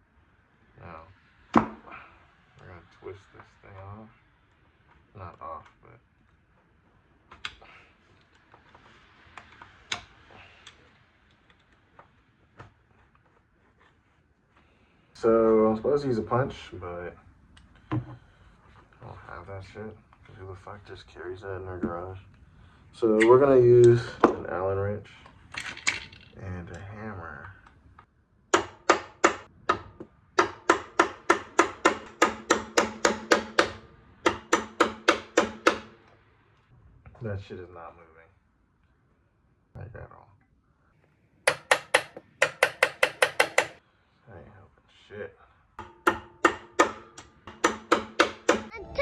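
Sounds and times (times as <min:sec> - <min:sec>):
hammer tapping on metal: 0:28.6 - 0:36.0, 0:41.5 - 0:43.8, 0:45.8 - 0:48.7.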